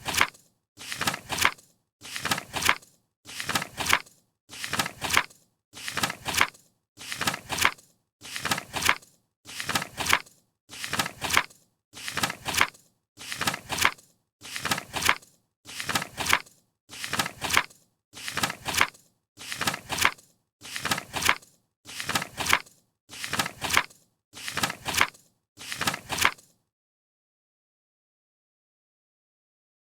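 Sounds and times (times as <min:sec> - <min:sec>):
paper page turning: 0:00.0 - 0:26.5.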